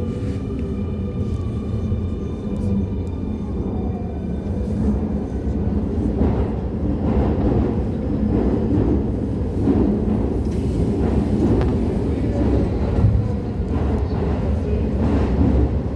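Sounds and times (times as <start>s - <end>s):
train wheels rumbling on rail: 0.0s - 15.9s.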